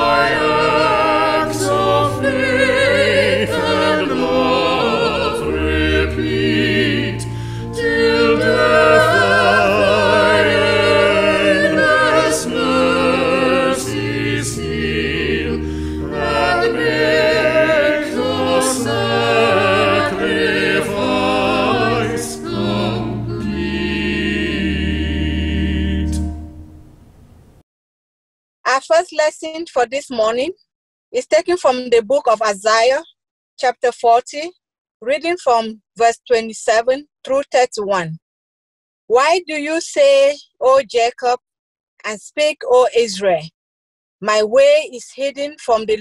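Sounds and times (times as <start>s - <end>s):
choir singing with vibrato: 0.0s - 26.8s
sustained low accompaniment notes: 0.0s - 27.0s.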